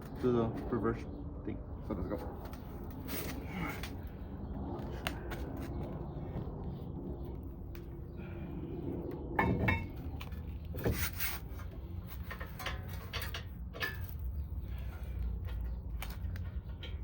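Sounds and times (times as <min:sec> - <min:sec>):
steady low hum: 0:00.0 - 0:17.0
metal tools clinking and knocking: 0:09.4 - 0:10.1, 0:12.1 - 0:14.4.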